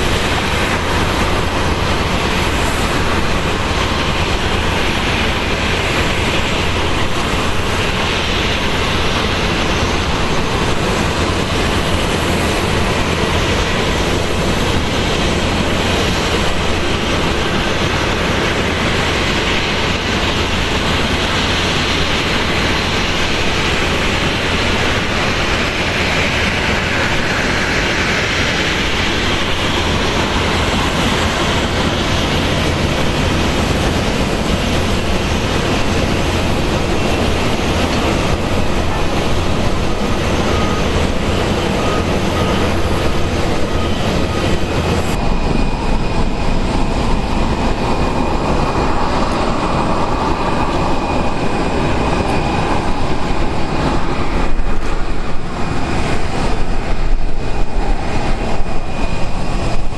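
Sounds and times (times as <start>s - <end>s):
jet engines running: 0.0s - 59.9s.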